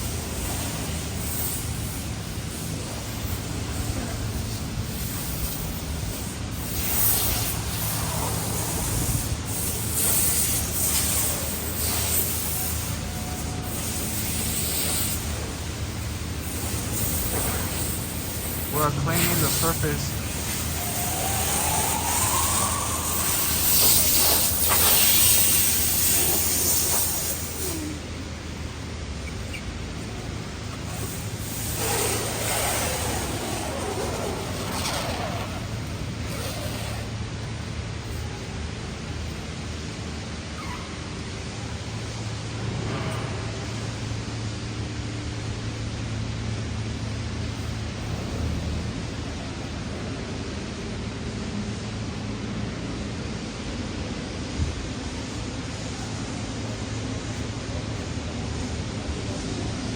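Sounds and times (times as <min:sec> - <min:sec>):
industrial machinery hum: 0:00.0 - 0:59.9
hissing rubbing noise: 0:16.4 - 0:37.5.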